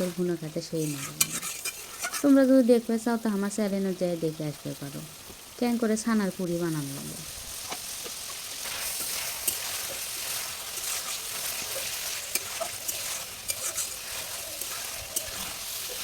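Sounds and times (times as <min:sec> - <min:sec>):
spatula scraping a pan: 0:00.0 - 0:02.4, 0:07.5 - 0:16.0
chicken sizzling in hot oil: 0:00.0 - 0:16.0.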